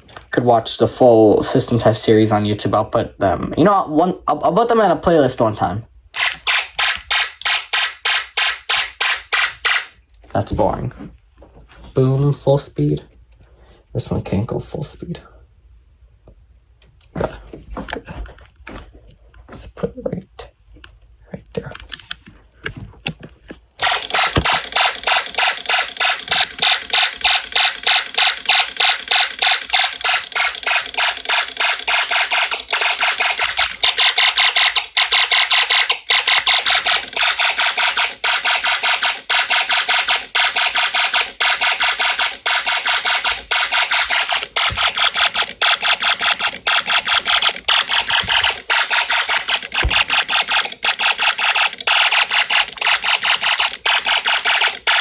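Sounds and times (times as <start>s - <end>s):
pulsing electronic alarm tone: 24.2s - 55.0s.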